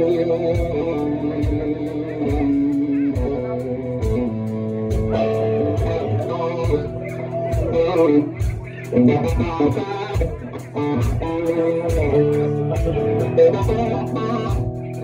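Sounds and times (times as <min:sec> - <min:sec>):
drum beat: 0:00.0 - 0:15.0
electric guitar chords: 0:00.0 - 0:15.0.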